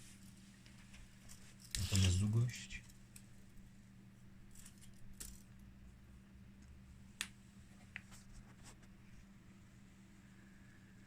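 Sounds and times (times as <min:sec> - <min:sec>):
soft clicks and rustles: 0:00.0 - 0:05.8, 0:06.6 - 0:09.4.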